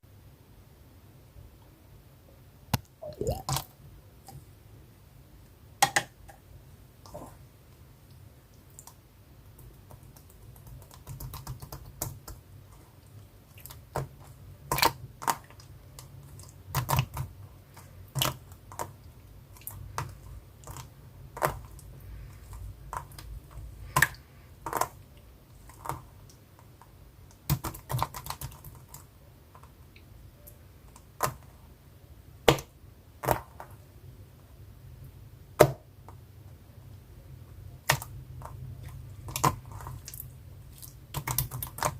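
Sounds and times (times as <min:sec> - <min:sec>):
sharp clicks and snaps: 0:02.7 - 0:03.7.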